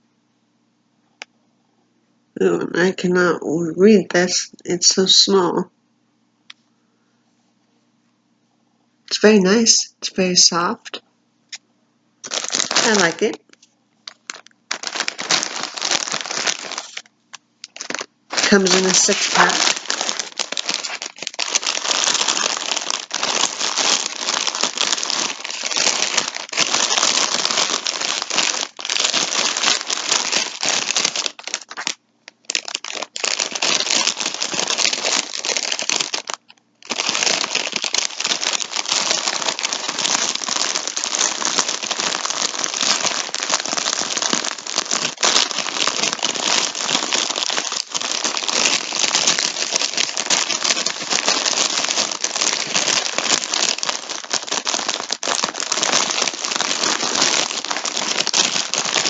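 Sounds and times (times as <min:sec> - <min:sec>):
plastic packaging crinkling: 0:12.2 - 0:59.0.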